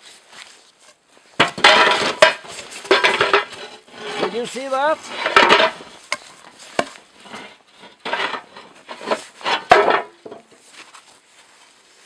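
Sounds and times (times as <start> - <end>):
stove parts scraping and knocking: 1.4 - 10.6.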